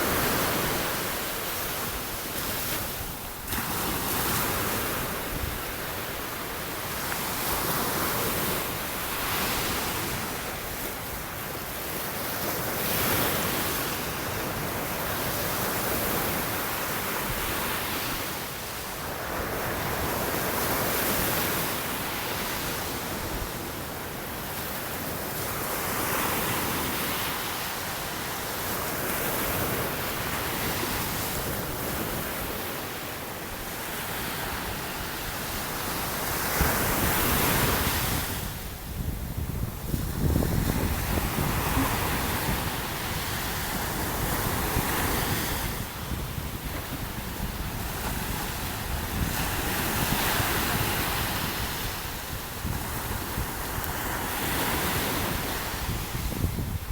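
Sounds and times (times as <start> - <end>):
ocean surf breaking on beach: 0.0 - 56.9
wind on microphone: 33.6 - 56.9.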